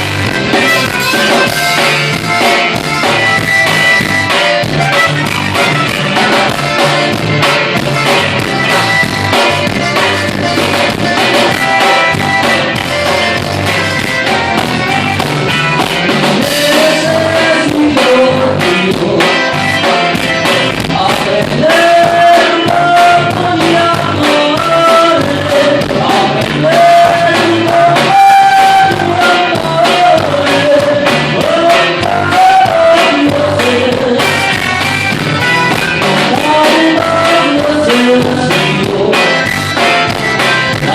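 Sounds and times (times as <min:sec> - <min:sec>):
drum beat: 0:00.0 - 0:40.9
guitar: 0:00.0 - 0:40.9
person singing: 0:07.8 - 0:35.0, 0:36.0 - 0:40.9.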